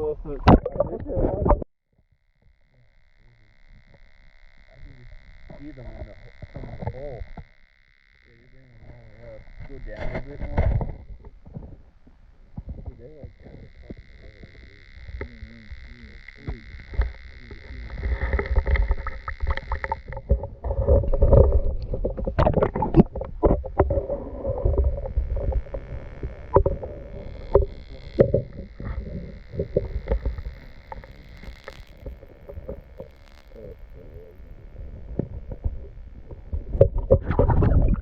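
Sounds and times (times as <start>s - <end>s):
faint high whine: 0.0s - 38.0s
water sloshing and gurgling: 0.3s - 1.6s, 17.9s - 38.0s.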